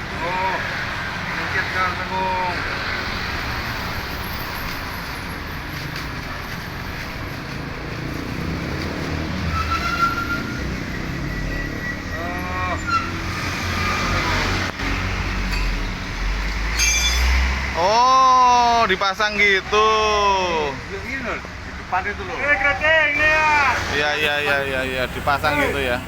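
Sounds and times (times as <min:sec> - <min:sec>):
vehicle motor rumbling: 0:00.0 - 0:17.9.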